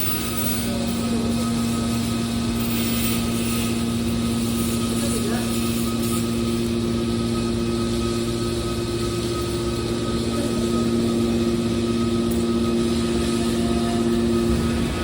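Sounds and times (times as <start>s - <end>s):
hydraulic baler motor humming: 6.3s - 15.0s.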